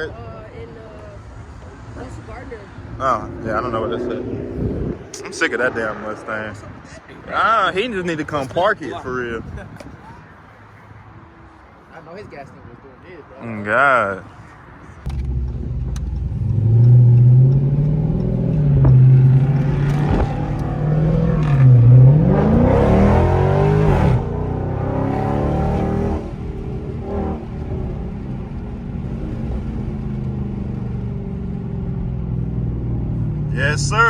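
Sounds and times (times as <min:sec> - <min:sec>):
car engine revving: 0:01.4 - 0:06.8, 0:15.1 - 0:34.0.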